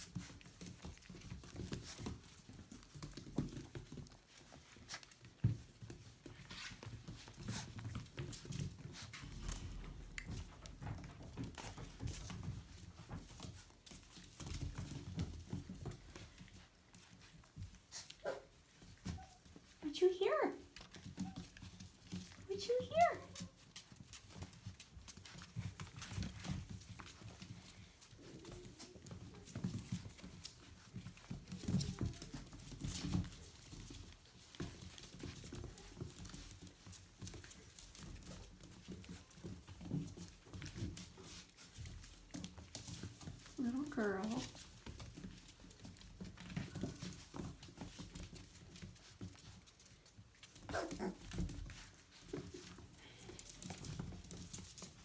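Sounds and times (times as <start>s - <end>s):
puppies scratching and scrabbling: 0.0s - 55.0s
puppy whining: 18.0s - 19.6s, 50.6s - 51.6s.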